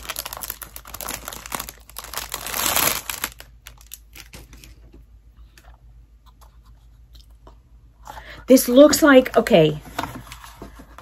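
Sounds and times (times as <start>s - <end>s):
packaging crinkling: 0.0s - 4.8s.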